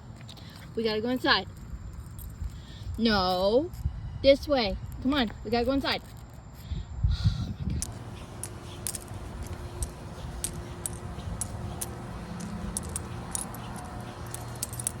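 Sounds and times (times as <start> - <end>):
dog collar tags jingling: 7.8 - 15.0
steady low hum: 7.8 - 15.0.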